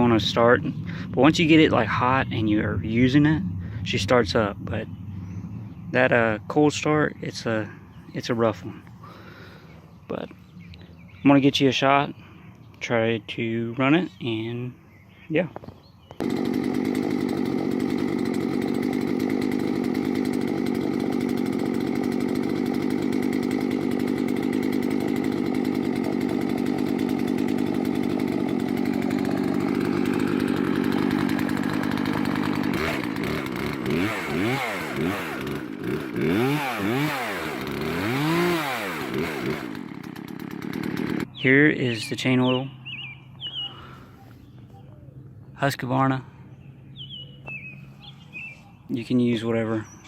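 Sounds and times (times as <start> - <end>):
chainsaw idling and revving: 0.0 - 3.3, 16.1 - 42.6.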